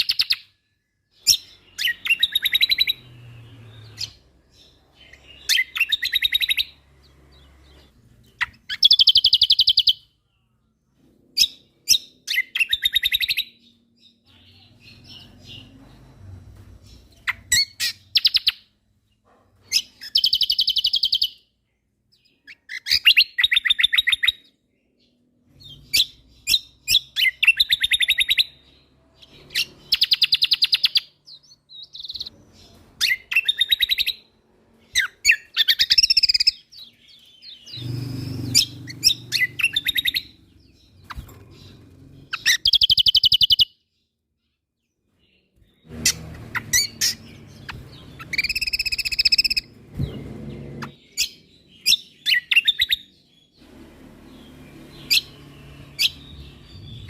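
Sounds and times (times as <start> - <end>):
songbird trilling: 37.5 - 43.7, 46.0 - 49.7.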